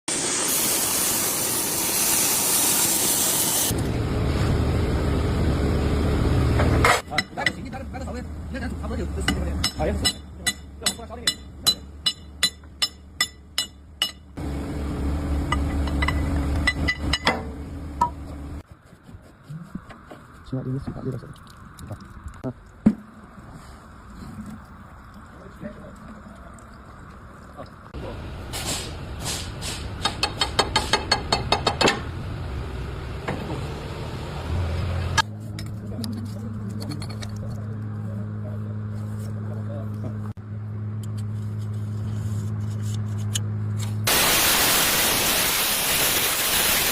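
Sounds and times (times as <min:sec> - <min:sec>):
hammer striking steel: 0:09.2 - 0:14.3, 0:30.0 - 0:32.1.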